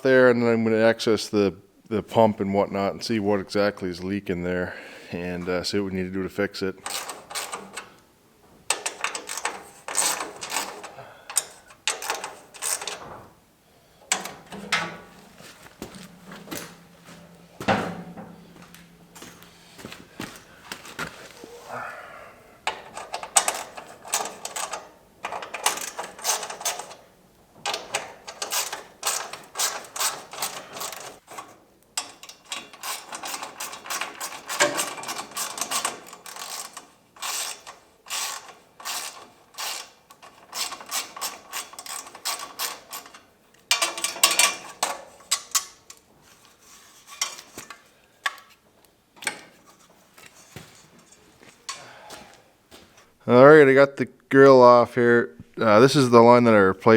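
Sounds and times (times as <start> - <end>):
ratchet wrench clicking: 32.6 - 39.9.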